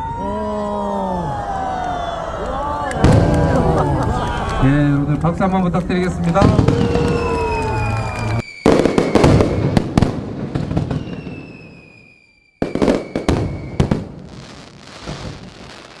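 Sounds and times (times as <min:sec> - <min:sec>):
fireworks cracking and crackling: 0:05.3 - 0:16.0.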